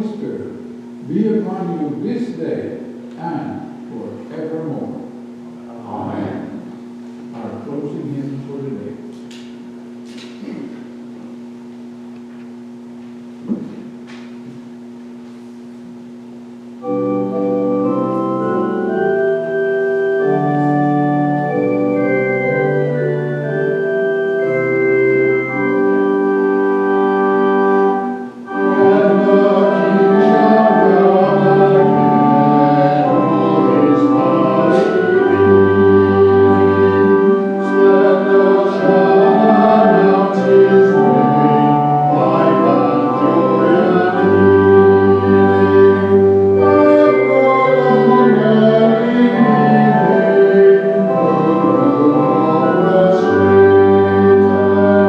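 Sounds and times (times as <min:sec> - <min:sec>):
organ playing chords: 0:00.0 - 0:55.0
voices singing a hymn: 0:16.8 - 0:55.0.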